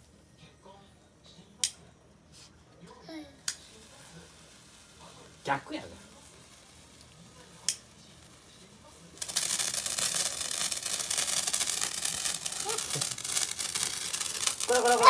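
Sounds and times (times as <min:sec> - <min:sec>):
firework crackling hiss: 0:03.4 - 0:15.0.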